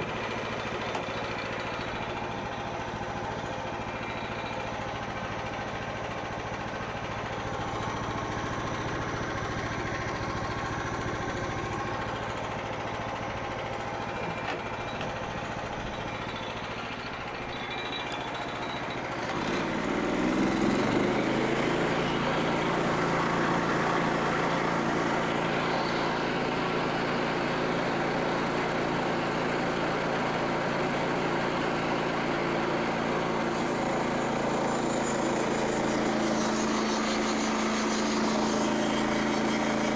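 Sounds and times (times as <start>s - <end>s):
sawmill gas engine running: 0.0s - 39.9s.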